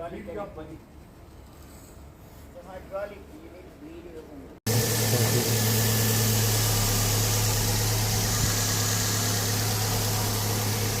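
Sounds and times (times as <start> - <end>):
car engine idling: 4.7 - 11.0.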